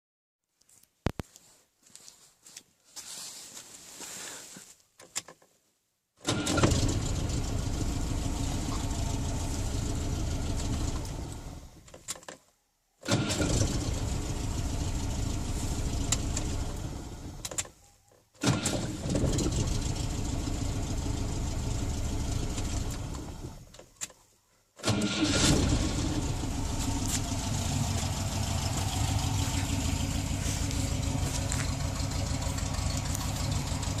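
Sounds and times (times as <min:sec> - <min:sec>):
car engine starting and running: 0:06.2 - 0:12.0, 0:13.1 - 0:17.7, 0:18.4 - 0:23.9, 0:24.8 - 0:34.0.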